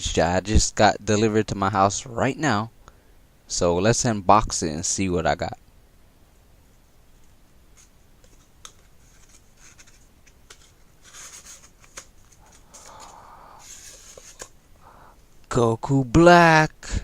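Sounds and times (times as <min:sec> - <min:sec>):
cardboard scratching and rustling: 0:07.8 - 0:14.6.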